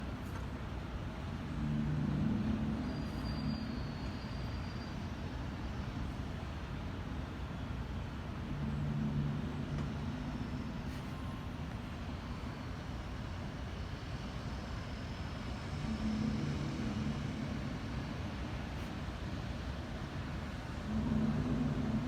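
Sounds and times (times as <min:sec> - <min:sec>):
steady low rumble: 0:00.0 - 0:03.8, 0:07.6 - 0:13.5, 0:15.5 - 0:22.0
low horn-like droning tone: 0:01.2 - 0:05.1, 0:08.1 - 0:13.3, 0:15.1 - 0:22.0.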